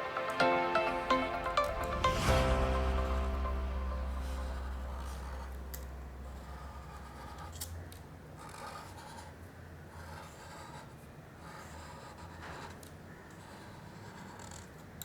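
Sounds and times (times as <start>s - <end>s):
pen scratching on paper: 8.4s - 14.8s.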